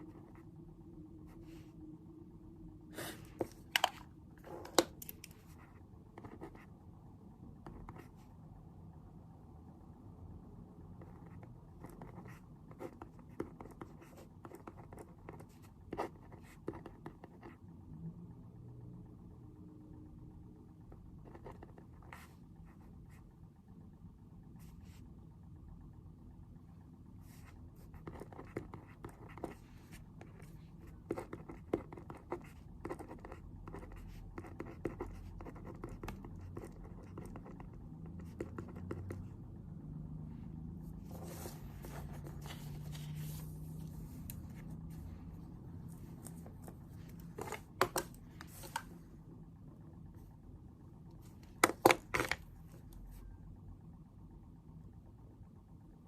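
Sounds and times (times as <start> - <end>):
faint low room hum: 0.0 - 56.0
pen scratching on paper: 5.4 - 6.7, 11.0 - 17.6, 27.3 - 39.2, 41.0 - 45.0.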